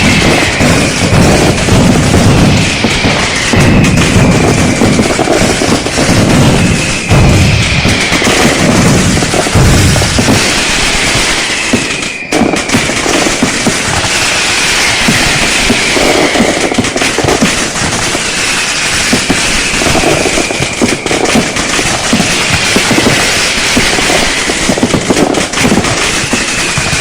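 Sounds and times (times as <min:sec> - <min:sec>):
firecrackers crackling: 0:00.0 - 0:27.0
faint falling whistle: 0:02.5 - 0:05.8, 0:06.4 - 0:08.8, 0:10.2 - 0:16.8, 0:18.4 - 0:24.8, 0:26.0 - 0:27.0.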